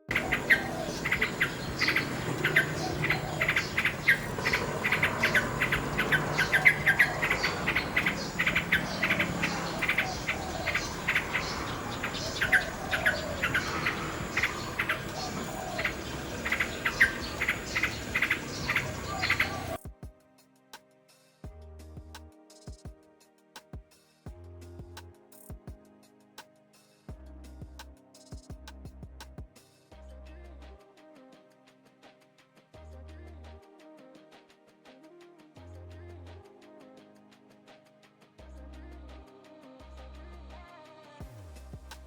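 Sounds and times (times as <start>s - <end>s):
nightingale singing: 0.1s - 19.8s.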